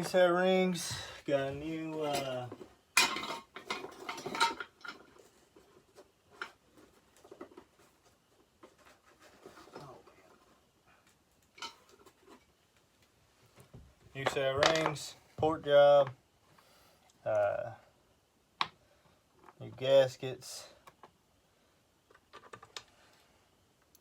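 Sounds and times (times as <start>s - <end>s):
small metal parts and tools rattling: 0.0s - 12.5s.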